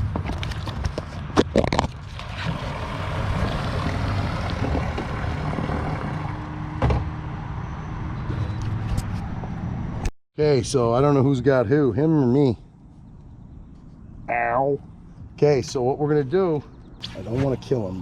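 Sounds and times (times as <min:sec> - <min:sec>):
boat motor running: 0:02.2 - 0:07.0.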